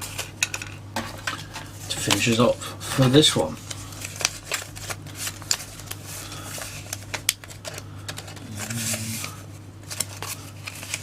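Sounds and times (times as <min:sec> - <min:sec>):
low steady hum: 0:00.0 - 0:11.0
cards clicking and tapping: 0:00.2 - 0:02.4, 0:06.8 - 0:09.3
packaging rustle: 0:01.0 - 0:11.0.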